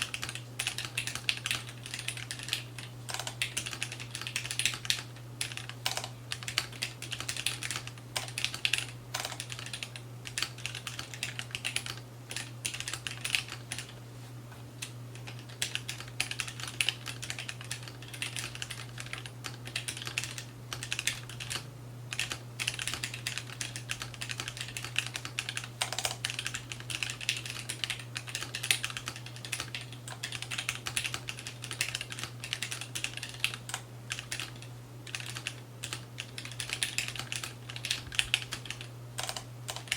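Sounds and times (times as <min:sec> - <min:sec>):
mechanical keyboard typing: 0:00.0 - 0:14.0, 0:14.8 - 0:39.9.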